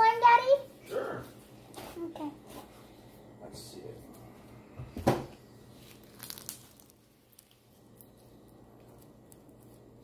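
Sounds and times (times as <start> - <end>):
sticky slime crackles: 5.7 - 10.0
slime being squeezed: 5.8 - 8.1.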